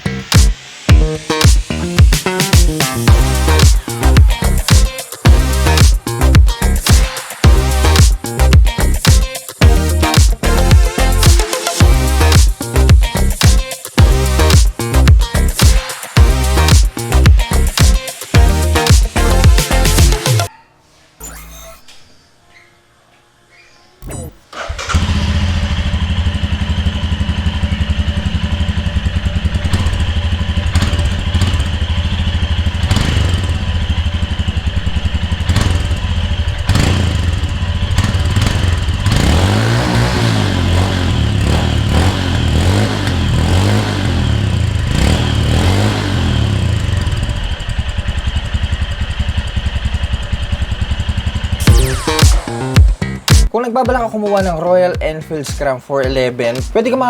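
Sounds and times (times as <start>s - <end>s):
motorcycle engine revving: 0.0s - 20.5s, 24.5s - 53.5s.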